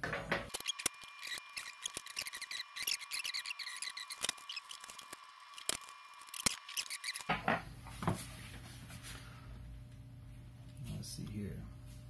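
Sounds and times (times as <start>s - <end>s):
low steady hum: 0.0s - 12.0s
small metal parts clicking: 0.5s - 7.3s.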